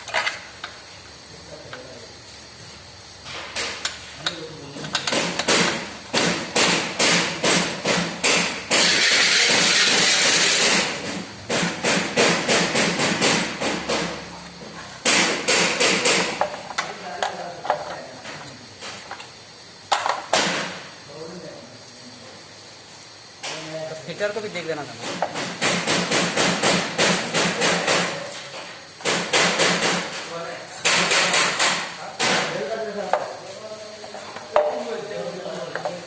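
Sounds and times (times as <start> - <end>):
loud hiss: 0.0 - 17.6, 18.7 - 36.0
sharp knocks: 5.0 - 14.2, 15.0 - 16.6, 25.0 - 28.2, 29.0 - 30.2, 30.8 - 32.6.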